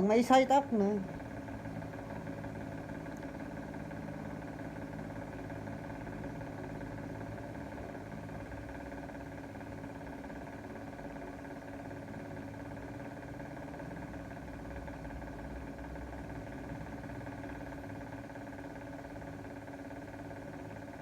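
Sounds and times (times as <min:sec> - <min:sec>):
motor humming steadily: 0:00.0 - 0:21.0.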